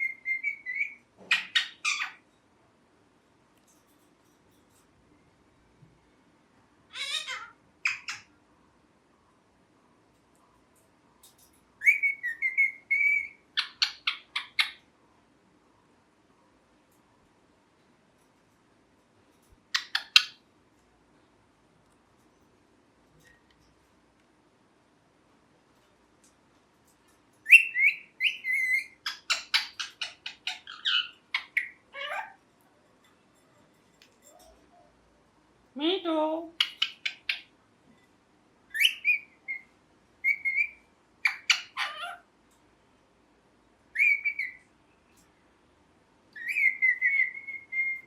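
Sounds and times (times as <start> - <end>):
parrot whistling: 0.0 - 2.1, 11.8 - 13.4, 27.4 - 32.3, 38.7 - 42.2, 43.9 - 44.6, 46.4 - 48.0
parrot sharp chirps: 0.0 - 2.2, 6.9 - 8.3, 11.8 - 14.8, 19.7 - 20.4, 27.4 - 32.4, 36.5 - 37.5, 38.7 - 42.2, 43.9 - 44.7, 46.3 - 48.0.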